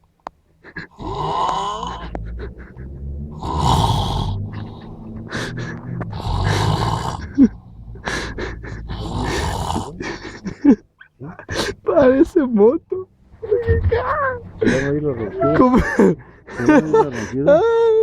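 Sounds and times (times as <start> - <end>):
quiet breathing: 0.5 - 10.8
man snoring heavily: 0.9 - 2.6, 3.3 - 10.6.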